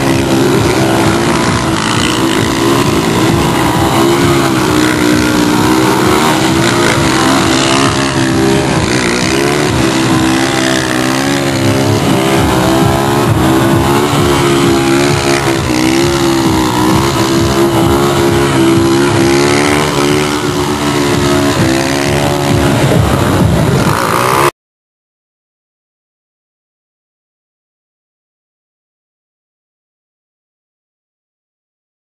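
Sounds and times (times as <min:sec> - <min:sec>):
vehicle engines revving: 0:00.0 - 0:24.5.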